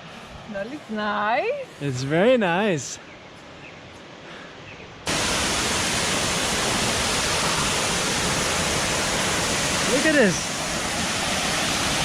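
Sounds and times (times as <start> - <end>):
waterfall roaring: 5.1 - 12.0.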